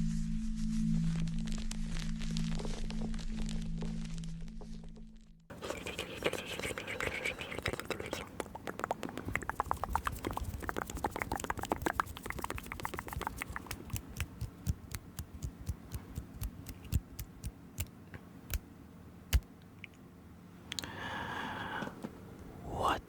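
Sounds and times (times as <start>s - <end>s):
close clicking and tapping: 8.8s - 17.9s.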